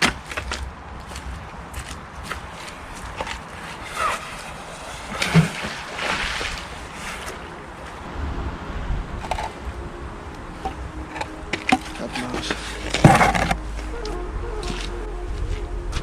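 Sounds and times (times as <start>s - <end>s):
wind rumbling on microphone: 0.6s - 16.0s
water splashing: 4.1s - 14.0s.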